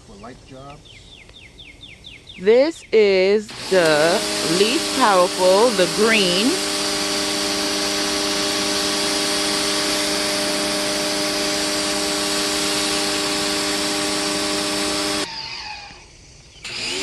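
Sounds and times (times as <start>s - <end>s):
pressure washer motor hum: 3.2s - 15.3s, 16.6s - 17.0s
water spray hissing: 3.4s - 15.3s.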